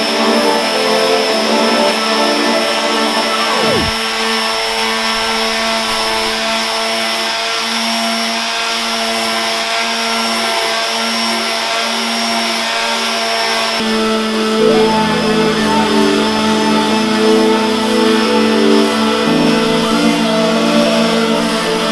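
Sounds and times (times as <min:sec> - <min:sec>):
music: 0:00.0 - 0:06.4, 0:13.8 - 0:21.9.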